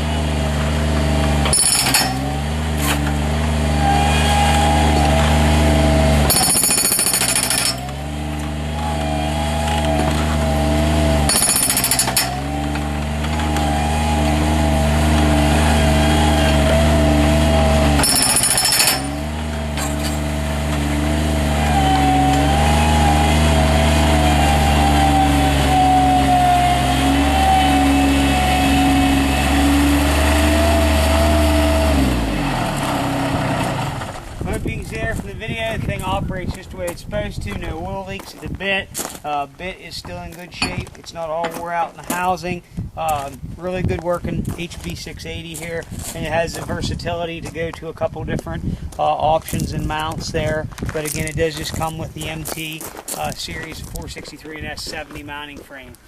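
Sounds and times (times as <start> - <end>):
loader engine and hydraulic drone: 0.0 - 36.6
hydraulic hammer on concrete: 0.3 - 32.4.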